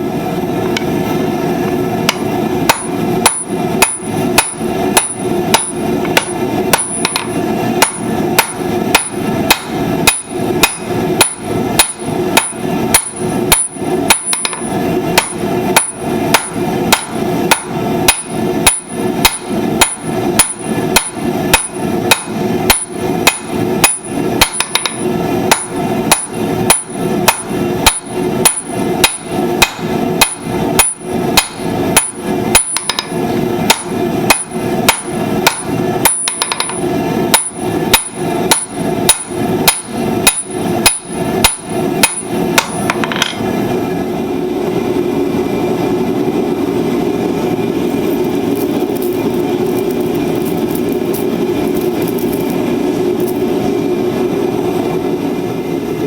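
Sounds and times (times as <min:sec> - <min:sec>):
low hum: 0:00.0 - 0:56.0
hammer striking steel on anvil: 0:02.1 - 0:43.5.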